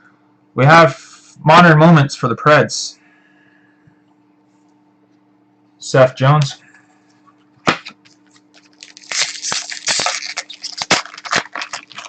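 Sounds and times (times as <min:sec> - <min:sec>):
faint electrical hum: 0:00.0 - 0:12.0
foil wrapper crinkling: 0:07.7 - 0:12.0.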